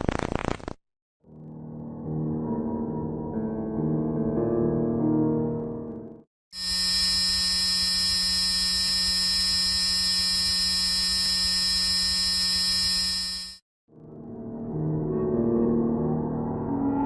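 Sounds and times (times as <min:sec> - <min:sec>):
electronic drone hum: 0:06.6 - 0:13.6.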